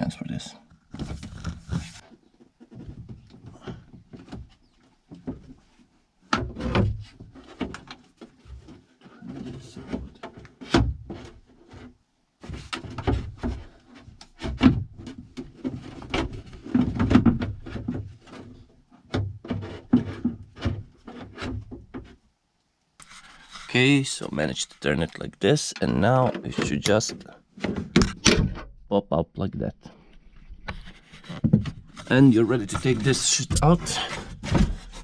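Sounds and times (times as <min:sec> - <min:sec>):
clicks and scrapes inside car door: 0:00.9 - 0:05.7, 0:06.3 - 0:22.2, 0:30.1 - 0:35.0.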